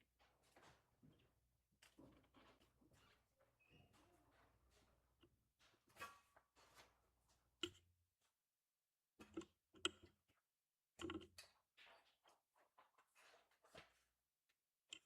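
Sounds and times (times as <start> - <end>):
faint clicks and knocks: 0.2 - 7.9, 9.2 - 10.4, 11.0 - 14.0.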